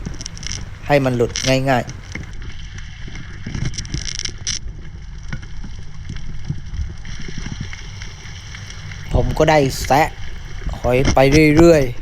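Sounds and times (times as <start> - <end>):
small clicks: 0.0 - 9.2
sea water rumble: 0.0 - 12.0
wind noise on microphone: 0.0 - 12.0.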